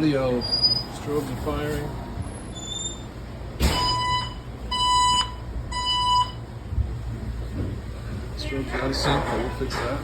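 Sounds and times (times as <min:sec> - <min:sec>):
fire alarm beeps: 0:03.7 - 0:06.5.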